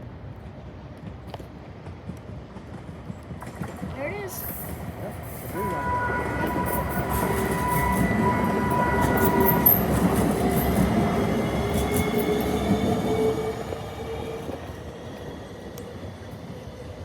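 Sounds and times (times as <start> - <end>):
train passing: 0.0 - 17.0
high ringing tone: 5.5 - 10.9.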